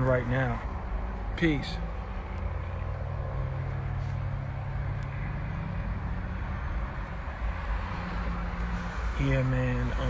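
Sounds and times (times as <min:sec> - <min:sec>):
vehicle rumble: 0:00.0 - 0:10.0.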